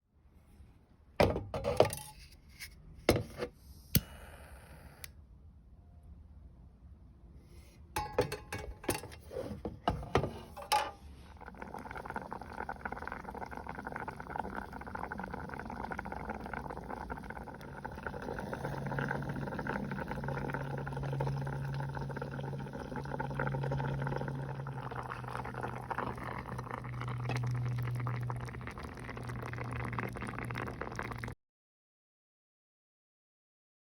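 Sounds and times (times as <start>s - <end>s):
cookware clinking: 8.0s - 9.2s, 10.5s - 11.0s.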